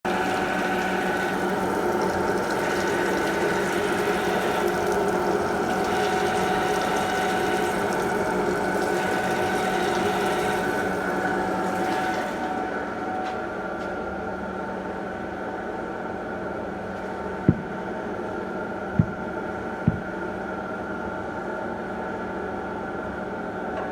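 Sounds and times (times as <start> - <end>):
lathe machine hum: 0.1 - 13.7.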